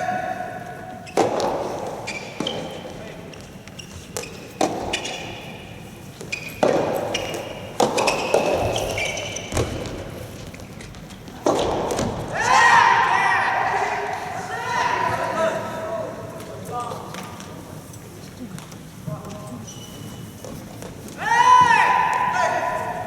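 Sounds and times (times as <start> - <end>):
tennis ball bouncing: 6.6 - 10.0.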